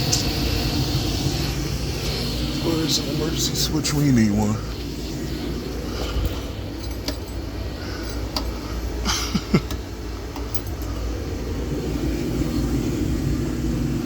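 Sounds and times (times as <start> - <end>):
gas furnace humming: 0.0 - 14.0
handling clicks and knocks: 9.6 - 11.1.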